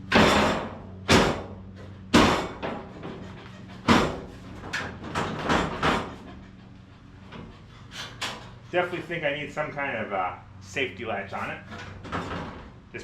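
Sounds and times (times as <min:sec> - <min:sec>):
metal hood clanking: 0:00.0 - 0:06.4, 0:11.3 - 0:13.0.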